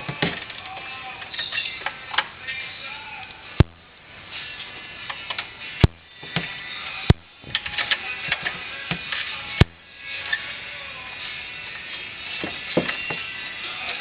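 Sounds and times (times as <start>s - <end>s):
ratcheting wrench clicking: 7.5s - 8.5s.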